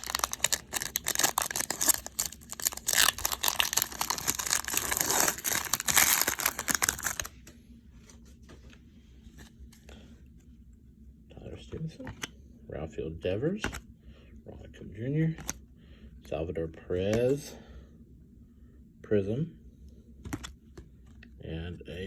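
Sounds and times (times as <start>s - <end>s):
card pack wrapper tearing and crinkling: 0.0s - 7.3s.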